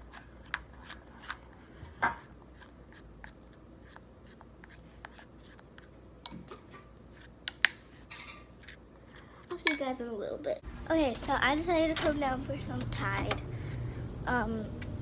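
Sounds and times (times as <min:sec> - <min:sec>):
slime mixed by hand: 0:00.0 - 0:09.6.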